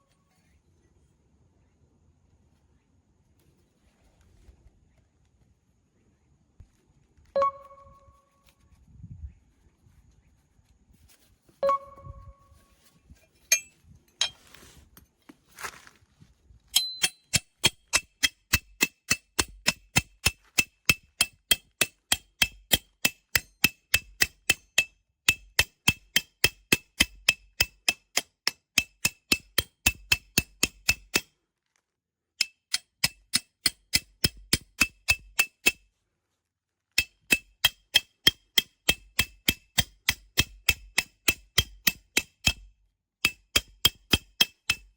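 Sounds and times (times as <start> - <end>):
hammer clanging on metal peg: 13.5 - 14.6, 16.7 - 31.3, 37.0 - 42.6, 43.2 - 44.9.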